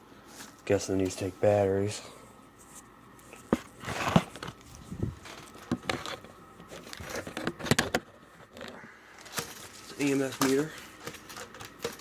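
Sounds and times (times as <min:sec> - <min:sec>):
packaging crinkling and rustling: 0:03.3 - 0:12.0.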